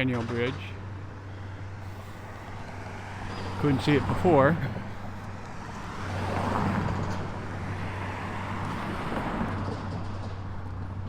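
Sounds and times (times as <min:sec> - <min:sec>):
steady low hum: 0:00.2 - 0:07.8
vehicle passing: 0:00.8 - 0:11.0.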